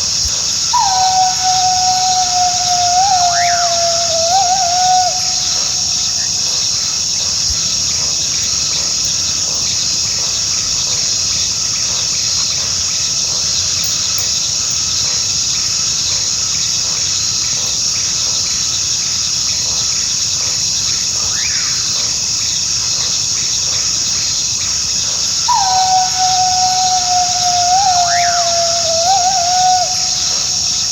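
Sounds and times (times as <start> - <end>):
steady high hiss: 0.0 - 30.9
coyote howling: 0.7 - 5.7, 25.4 - 30.9.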